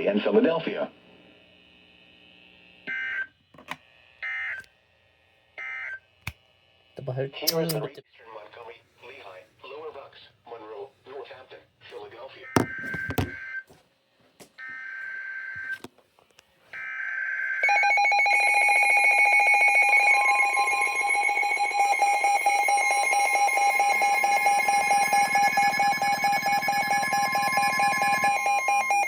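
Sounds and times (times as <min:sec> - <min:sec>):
warbling data tone bursts: 0:17.6 - 0:29.0.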